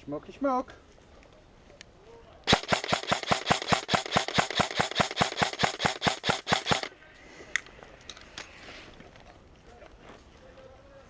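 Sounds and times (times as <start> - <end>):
airsoft rifle firing rapidly: 2.5 - 6.9.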